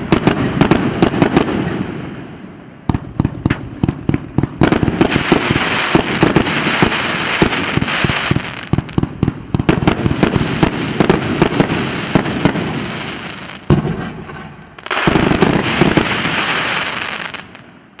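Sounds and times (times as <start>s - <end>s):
fireworks bangs: 0.0s - 2.2s, 2.9s - 18.0s
fireworks crackling hiss: 4.6s - 9.0s, 10.0s - 17.6s.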